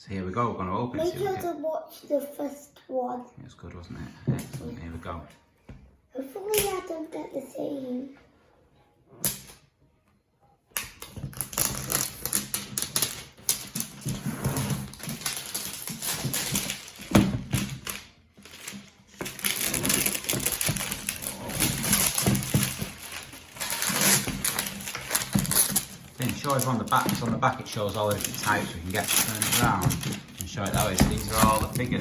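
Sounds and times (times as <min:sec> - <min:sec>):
packaging crinkling and rustling: 0:11.1 - 0:32.0.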